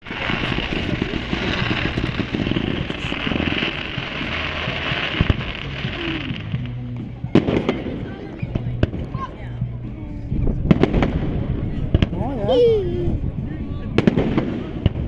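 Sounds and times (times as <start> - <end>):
fireworks crackling: 0.1 - 6.6.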